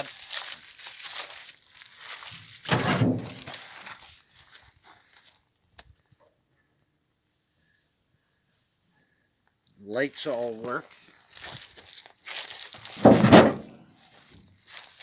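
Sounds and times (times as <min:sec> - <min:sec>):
rustling crinkling: 0:00.0 - 0:05.4, 0:10.0 - 0:15.0
heavy thud: 0:02.7 - 0:03.5, 0:13.0 - 0:13.8.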